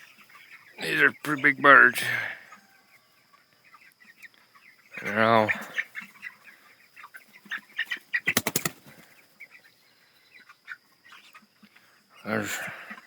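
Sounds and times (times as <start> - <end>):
chickens cheeping: 0.0 - 13.0
wings flapping: 8.2 - 9.2.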